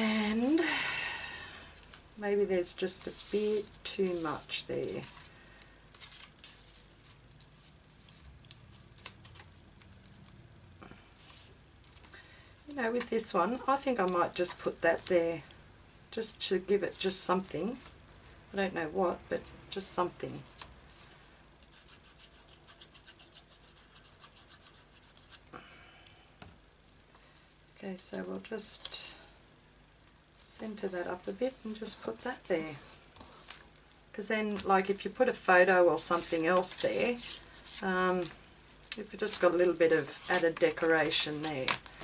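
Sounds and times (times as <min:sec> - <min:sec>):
paper rubbing scratchy strokes: 0:02.8 - 0:05.2
paper rustling: 0:05.9 - 0:10.2, 0:39.2 - 0:42.0.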